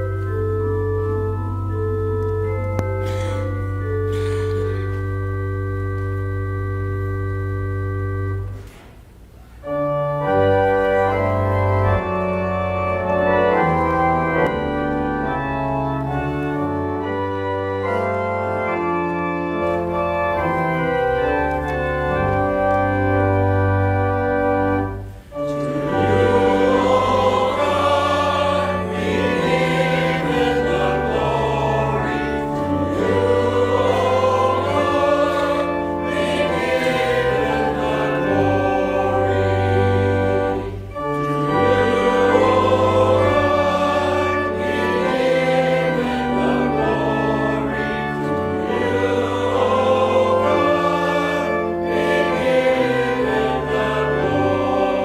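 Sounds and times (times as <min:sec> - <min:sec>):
church organ chords: 0:00.0 - 0:55.0
choir singing: 0:25.3 - 0:55.0.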